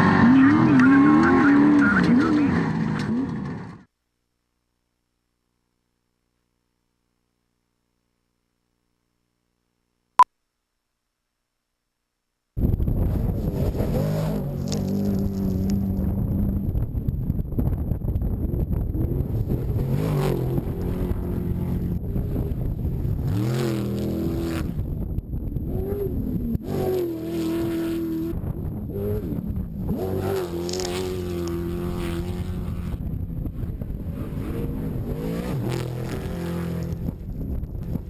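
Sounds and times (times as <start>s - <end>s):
race engines revving: 0.0s - 3.8s, 13.0s - 16.7s, 18.8s - 24.8s, 25.5s - 38.0s
steady low rumble: 14.4s - 23.3s, 28.2s - 30.1s, 31.0s - 35.3s.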